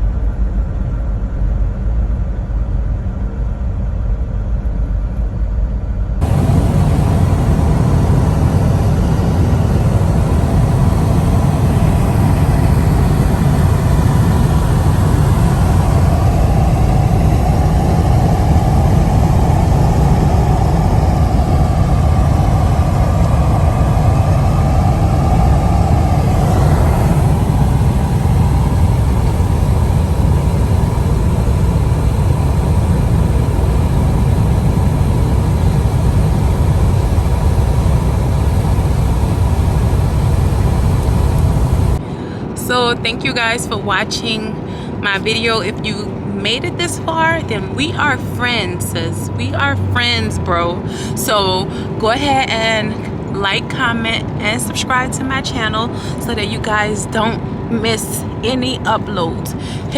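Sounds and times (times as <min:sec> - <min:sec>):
truck engine and road noise: 0:06.2 - 0:42.0, 0:46.9 - 0:50.9.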